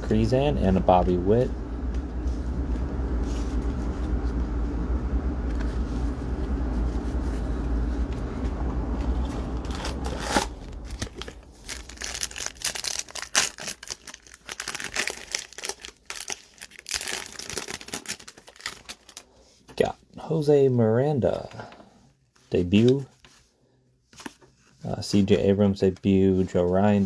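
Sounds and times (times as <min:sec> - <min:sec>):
steady low rumble: 0:00.0 - 0:15.6
foil wrapper tearing and crinkling: 0:09.6 - 0:19.4.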